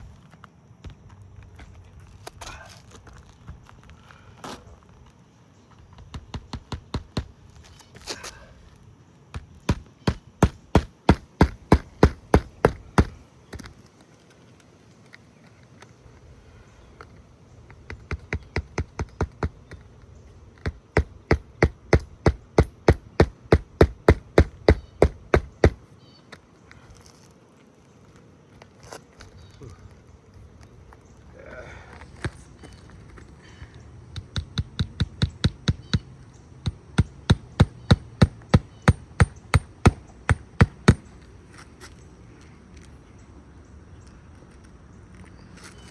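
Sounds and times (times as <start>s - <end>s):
hammer striking roofing nails: 6.0s - 7.3s, 9.3s - 13.7s, 17.7s - 19.9s, 20.6s - 25.8s, 34.1s - 41.1s.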